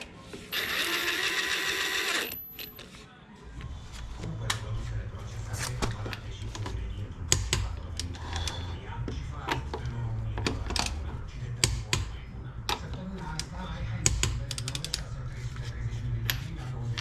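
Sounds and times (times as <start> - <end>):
steady low rumble: 3.5 - 17.0.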